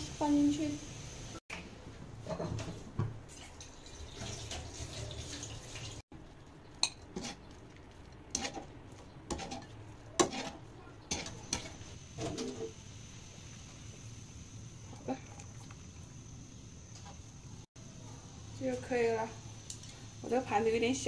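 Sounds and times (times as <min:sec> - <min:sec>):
water boiling in a pot: 0:00.0 - 0:01.4, 0:02.2 - 0:21.0
utensils clinking against a pot: 0:06.8 - 0:08.7, 0:09.3 - 0:12.7.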